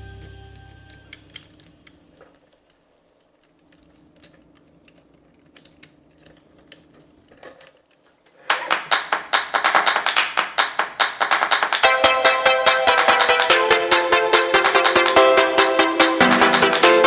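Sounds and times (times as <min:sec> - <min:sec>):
plastic toy parts clicking: 0:01.1 - 0:08.4
background music beat: 0:08.5 - 0:17.0.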